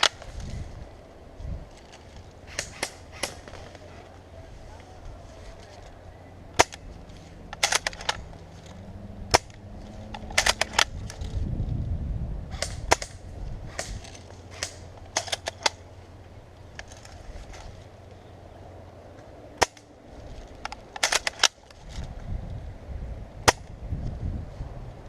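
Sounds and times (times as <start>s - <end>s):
low rumble: 0.0s - 21.1s
airsoft guns firing: 2.5s - 3.8s, 6.6s - 6.8s, 7.6s - 8.2s, 10.3s - 10.9s.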